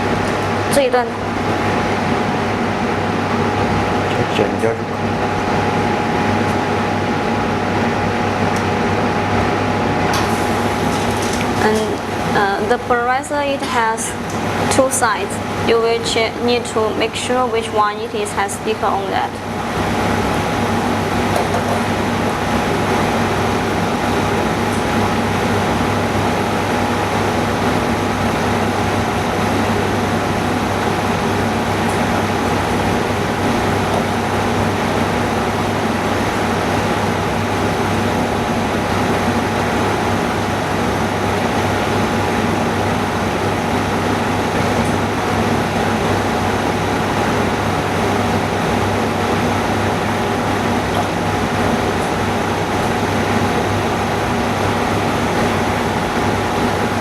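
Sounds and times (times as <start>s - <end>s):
low constant hum: 0.0s - 57.0s.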